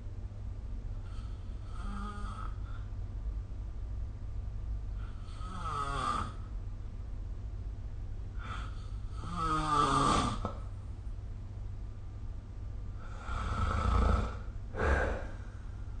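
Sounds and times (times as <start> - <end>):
person snoring: 1.1 - 2.8, 5.1 - 6.4, 8.4 - 10.5, 13.0 - 15.6
low hum: 14.4 - 16.0.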